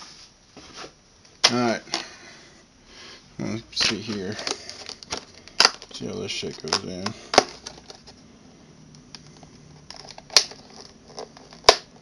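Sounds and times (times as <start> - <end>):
plastic parts clicking and snapping: 3.8 - 8.2, 9.0 - 12.0.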